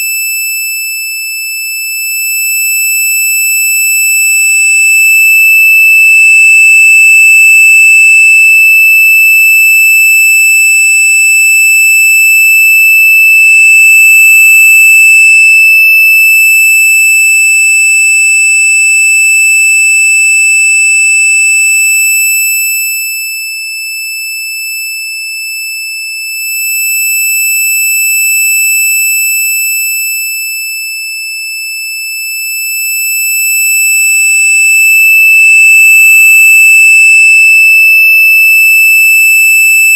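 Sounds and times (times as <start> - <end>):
high-pitched electronic tone: 6.0 - 8.5, 13.4 - 15.5, 35.4 - 37.4.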